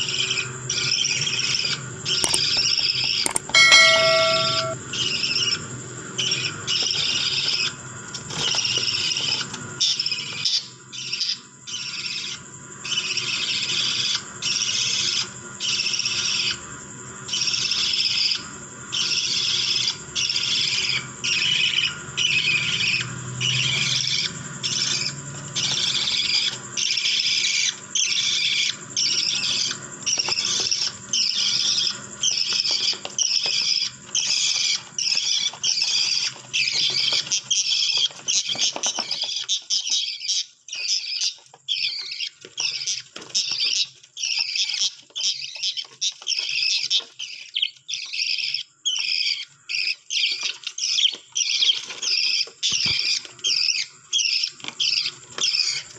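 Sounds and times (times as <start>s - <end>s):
budgerigars chattering: 0.0s - 5.5s, 19.0s - 55.9s.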